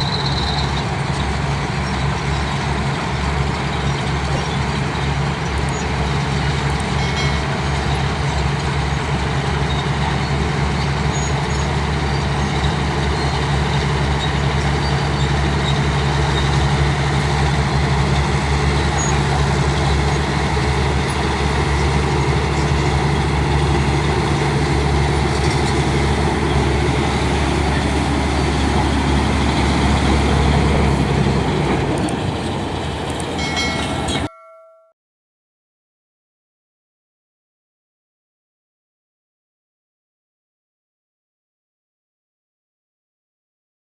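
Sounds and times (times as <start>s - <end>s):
bulldozer diesel engine rumbling: 0.0s - 34.3s.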